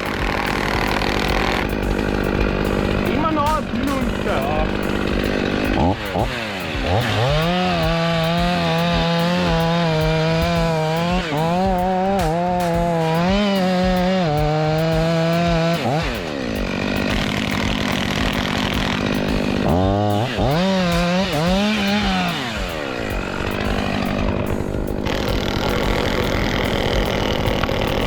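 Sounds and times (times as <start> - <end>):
chainsaw engine revving: 0.0 - 28.0.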